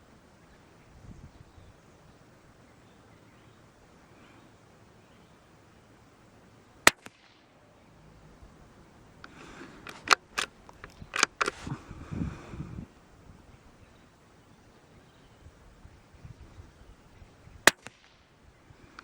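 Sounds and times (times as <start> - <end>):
rifle shot: 6.8 - 7.5, 17.6 - 18.3
rifle bolt clicking and rattling: 9.2 - 11.7.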